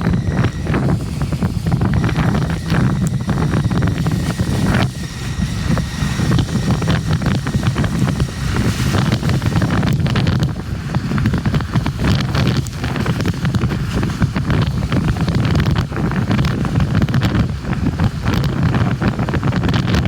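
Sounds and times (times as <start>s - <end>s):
road traffic: 0.0s - 19.2s
wind buffeting microphone: 0.0s - 20.0s.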